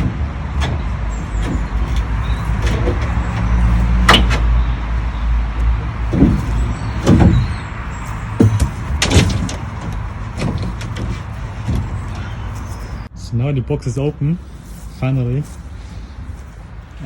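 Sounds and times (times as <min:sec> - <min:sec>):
knocks on wooden crate panels: 0:06.1 - 0:07.5, 0:08.4 - 0:12.0.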